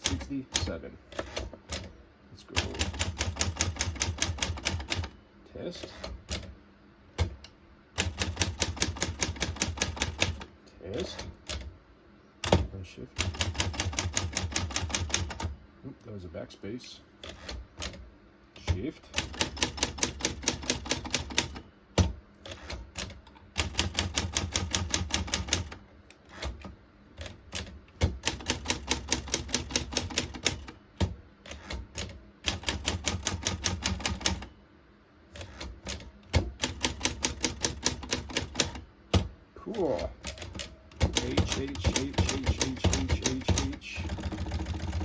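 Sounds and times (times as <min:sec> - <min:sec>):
typewriter keys striking: 0:02.6 - 0:05.1, 0:08.0 - 0:10.4, 0:13.2 - 0:15.5, 0:18.6 - 0:25.8, 0:27.2 - 0:34.5, 0:35.4 - 0:39.3, 0:40.2 - 0:45.0.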